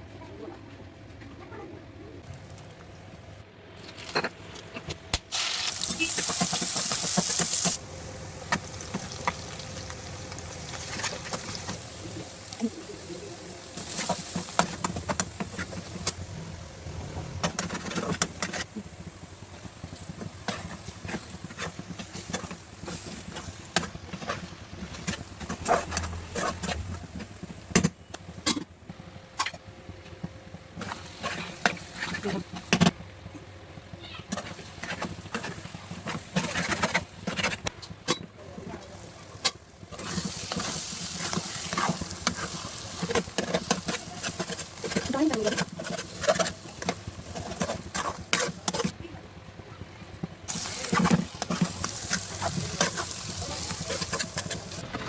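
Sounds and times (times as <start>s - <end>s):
loud hiss on stove: 5.2s - 25.1s, 39.0s - 48.7s, 50.5s - 54.8s.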